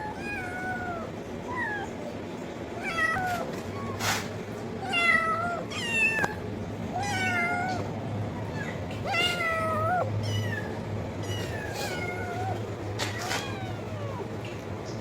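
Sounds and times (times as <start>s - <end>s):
steady low hum: 0.0s - 15.0s
cat meowing: 4.8s - 14.3s.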